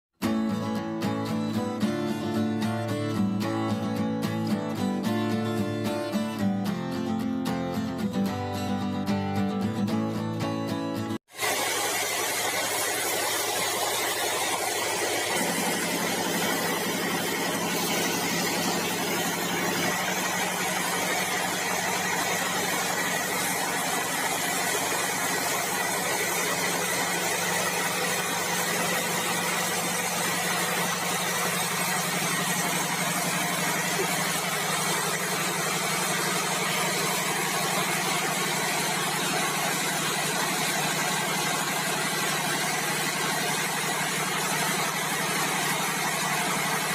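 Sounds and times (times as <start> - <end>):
sawmill machinery humming: 11.3 - 46.9.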